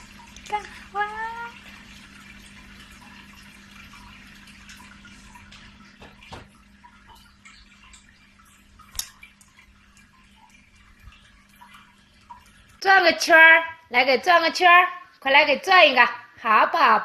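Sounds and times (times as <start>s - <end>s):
faint trickling water: 0.0s - 17.0s
small clicks: 8.9s - 9.6s.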